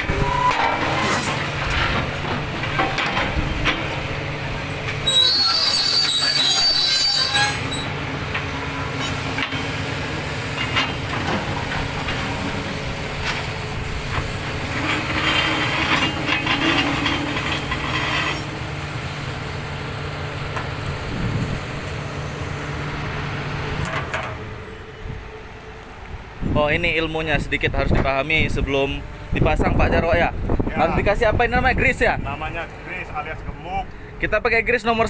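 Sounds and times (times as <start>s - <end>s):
metallic squealing: 0.0s - 3.6s, 4.9s - 9.7s, 14.2s - 19.5s
steel clanking on steel: 0.0s - 4.0s, 4.7s - 9.7s, 13.2s - 19.4s
diesel engine humming: 0.0s - 35.0s.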